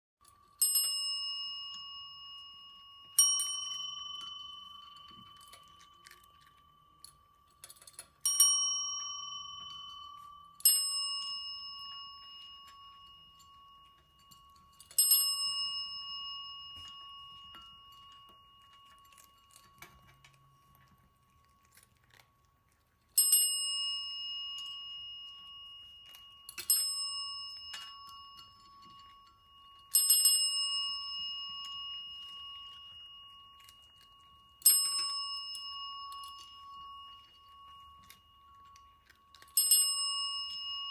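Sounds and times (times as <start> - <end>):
small metal bell ringing: 0.2 - 40.9.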